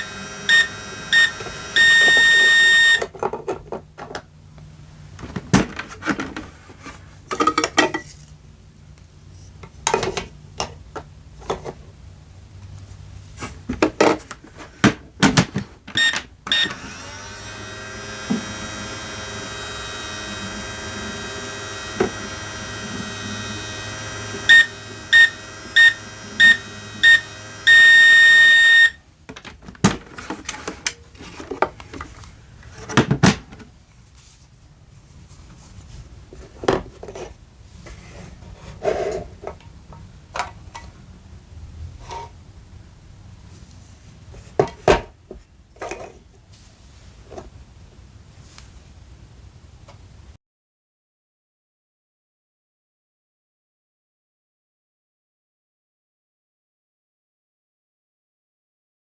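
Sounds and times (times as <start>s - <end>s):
toy microwave electronic hum: 0.0s - 3.1s, 15.9s - 29.0s
high beeps: 0.5s - 3.0s, 24.5s - 29.0s.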